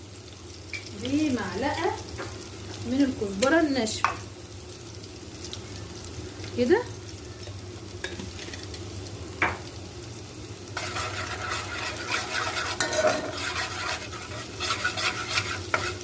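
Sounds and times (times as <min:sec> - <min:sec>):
garlic sizzling in hot oil: 0:00.0 - 0:16.0
spoon stirring and scraping pot: 0:10.8 - 0:16.0.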